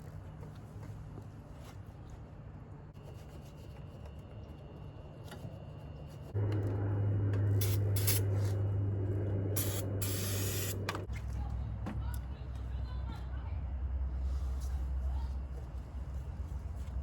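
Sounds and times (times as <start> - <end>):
machine hum: 6.3 - 11.1
wire brush scrubbing metal: 7.6 - 8.6.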